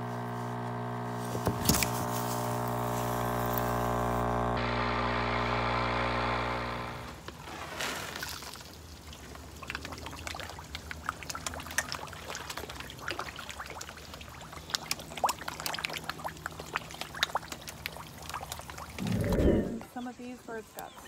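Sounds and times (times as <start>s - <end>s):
steady low hum: 0.0s - 7.2s, 19.0s - 20.0s.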